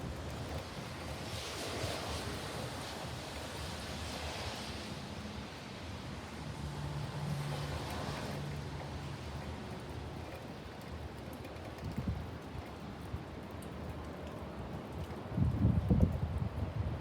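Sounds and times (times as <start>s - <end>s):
strong wind gusts: 15.4s - 17.0s.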